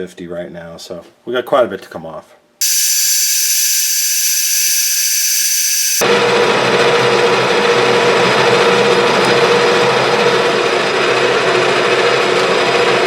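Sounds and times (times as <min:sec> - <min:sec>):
metal lathe humming: 0:02.6 - 0:06.0.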